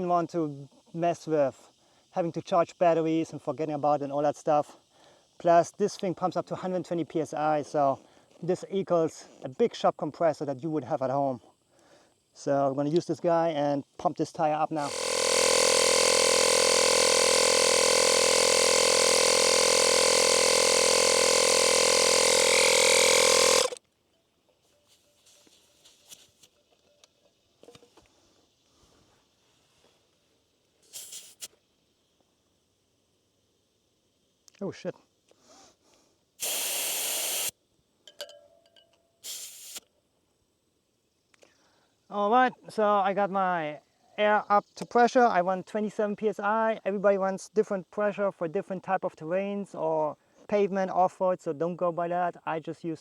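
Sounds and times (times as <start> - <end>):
air compressor running: 14.6 - 23.8, 30.8 - 31.5, 36.4 - 37.6, 39.2 - 39.8.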